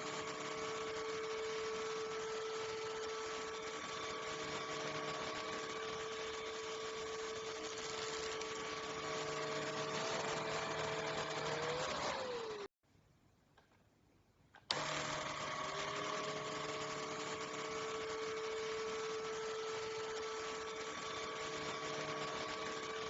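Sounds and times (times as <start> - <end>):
vacuum cleaner motor whine: 0.0 - 12.7, 14.7 - 23.0.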